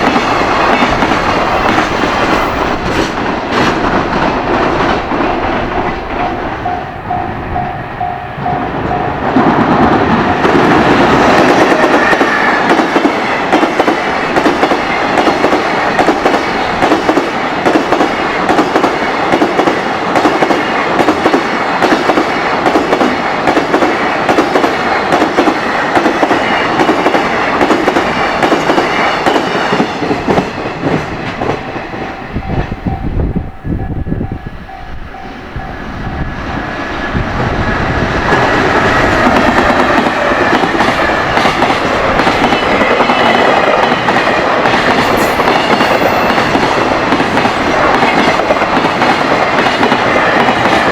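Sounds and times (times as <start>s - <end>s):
level-crossing warning bell: 4.8s - 12.7s, 28.4s - 48.9s.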